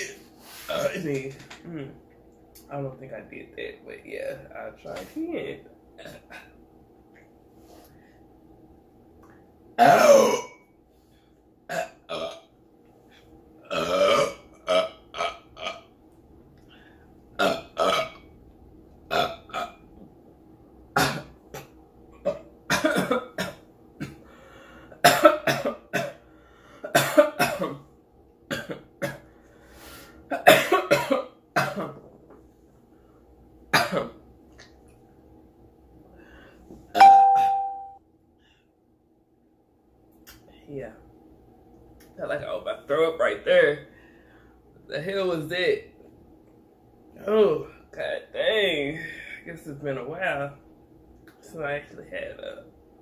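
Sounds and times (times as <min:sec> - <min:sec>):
person burping loudly: 0:09.8 - 0:10.6, 0:11.7 - 0:12.5, 0:13.6 - 0:15.9, 0:17.4 - 0:18.2, 0:19.1 - 0:19.8.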